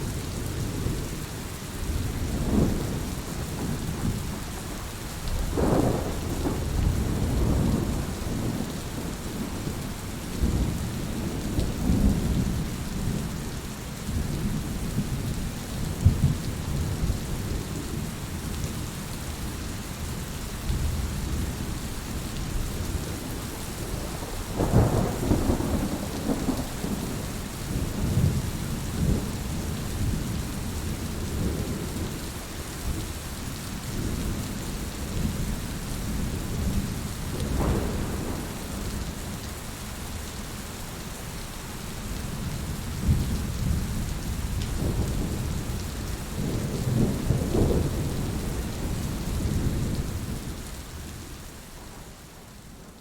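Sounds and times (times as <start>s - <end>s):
heavy rain: 0.0s - 53.0s
rolling thunder: 5.4s - 13.4s, 22.8s - 32.1s, 36.2s - 39.5s, 43.0s - 50.5s.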